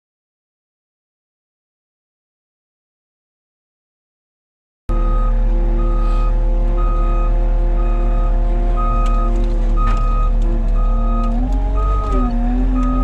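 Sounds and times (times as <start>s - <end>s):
engine running steadily: 4.9s - 13.0s
reversing alarm beeping: 4.9s - 13.0s.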